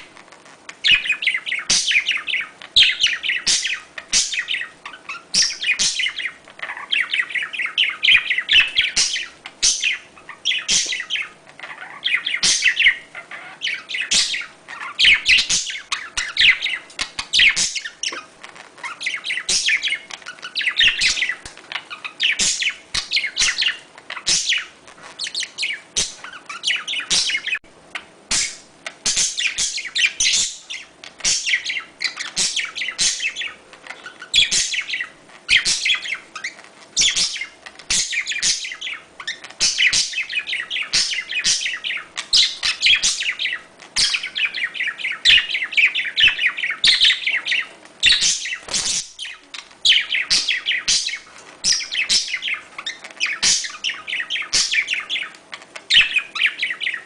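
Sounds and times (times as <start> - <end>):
budgerigars chirping and warbling: 0.0 - 57.0.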